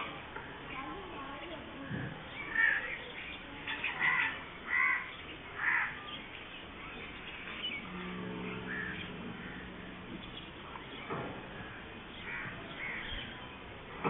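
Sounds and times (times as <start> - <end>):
birds calling harshly: 2.2 - 13.8
low steady tone: 7.7 - 12.1.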